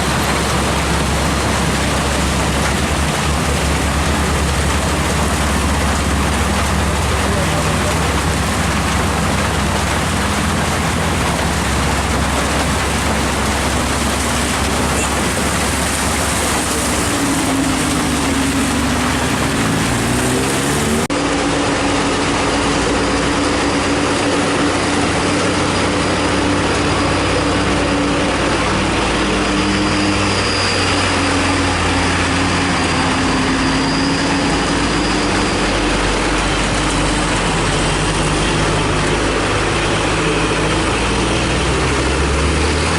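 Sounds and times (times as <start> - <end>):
heavy rain hiss: 0.0 - 23.3
diesel engines running: 0.0 - 42.9.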